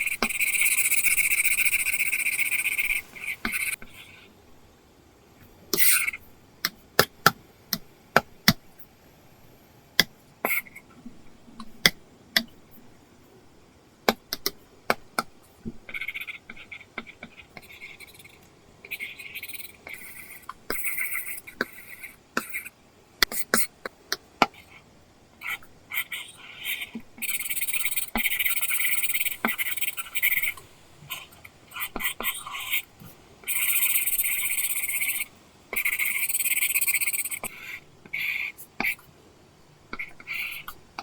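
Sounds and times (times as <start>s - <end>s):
pencil scratching on screen: 0.0s - 4.2s, 15.9s - 22.7s, 24.5s - 32.9s, 33.5s - 39.0s, 40.0s - 40.8s
sharp pencil taps: 14.1s - 15.8s.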